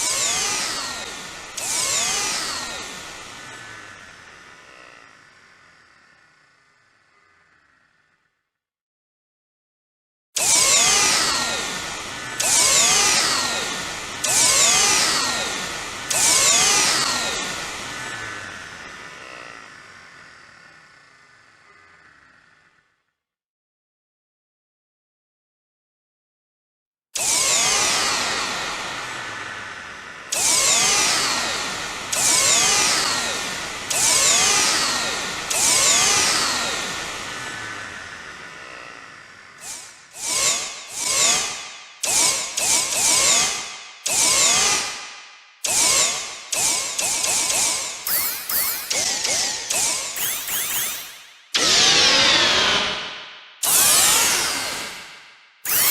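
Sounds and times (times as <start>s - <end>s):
sci-fi vacuum motor sweeps: 48.1s - 53.0s, 55.7s - 55.9s.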